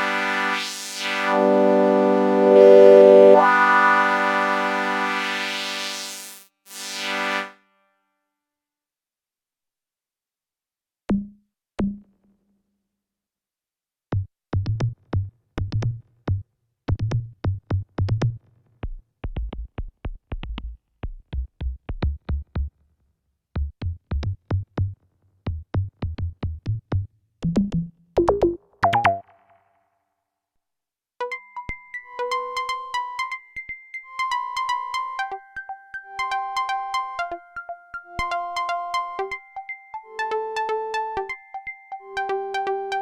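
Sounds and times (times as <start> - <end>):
synthesizer drum-like percussive notes: 23.6 - 29.7.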